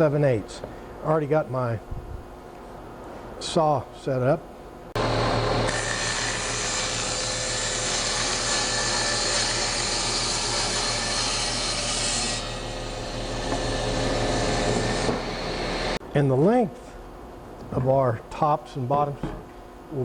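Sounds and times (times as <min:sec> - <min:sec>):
table saw motor hum: 0:05.0 - 0:16.0.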